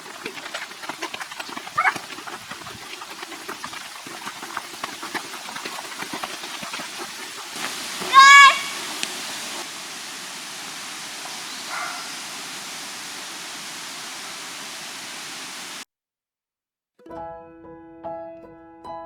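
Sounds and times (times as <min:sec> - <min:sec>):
steady rushing noise: 0:07.4 - 0:15.8
piano music: 0:17.1 - 0:19.0.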